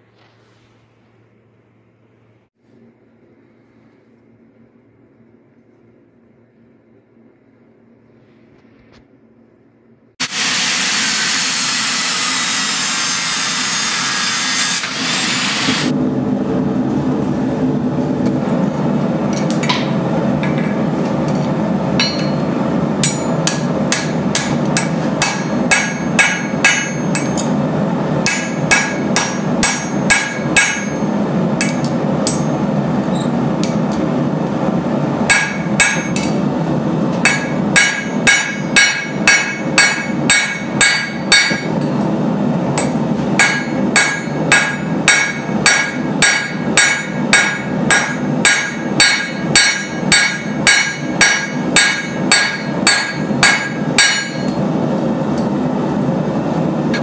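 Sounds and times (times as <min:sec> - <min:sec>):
loud hiss: 0:10.2 - 0:15.9
hammer striking steel on anvil: 0:19.3 - 0:27.6, 0:28.2 - 0:34.0, 0:35.2 - 0:36.4, 0:37.1 - 0:42.0, 0:42.7 - 0:54.7.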